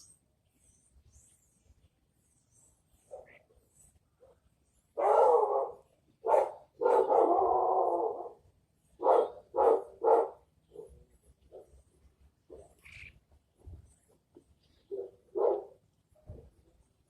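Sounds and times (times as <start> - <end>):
dog barking: 5.0 - 8.4, 9.0 - 11.7, 14.9 - 15.8.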